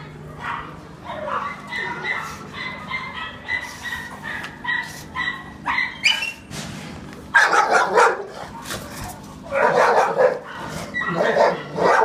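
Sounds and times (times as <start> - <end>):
dog barking and yipping: 0.4 - 6.4, 7.3 - 8.4, 9.5 - 12.0.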